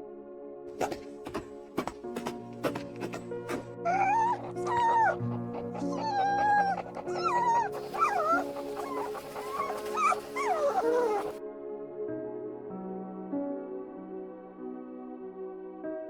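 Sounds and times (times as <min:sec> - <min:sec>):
soft background music: 0:00.8 - 0:16.0
dog whimpering and whining: 0:02.2 - 0:11.4.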